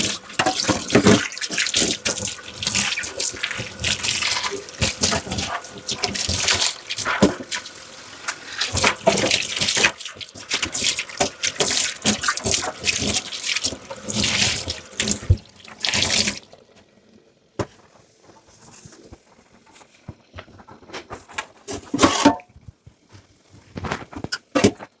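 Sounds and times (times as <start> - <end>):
water splashes: 0.0 - 16.8
water running in a sink: 0.0 - 19.1
dishes clattering: 21.8 - 22.5.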